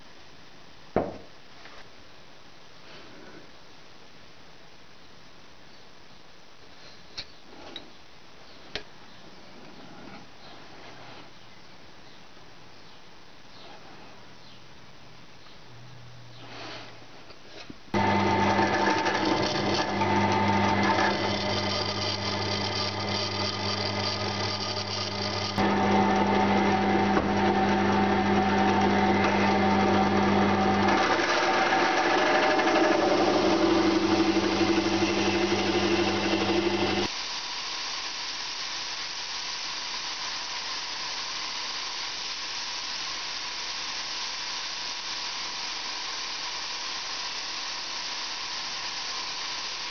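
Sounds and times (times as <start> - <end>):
electric workshop machine humming: 17.9 - 49.9
hiss: 36.3 - 49.9.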